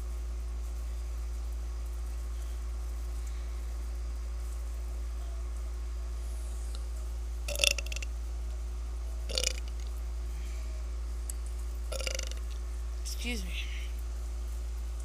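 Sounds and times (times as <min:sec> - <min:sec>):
steady low hum: 0:00.0 - 0:15.0
woman burping: 0:12.0 - 0:12.4.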